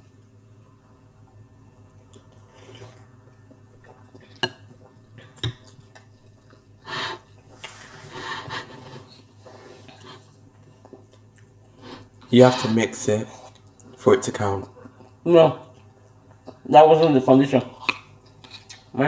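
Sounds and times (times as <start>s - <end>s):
wooden spoons scraping on plates: 7.8s - 10.3s.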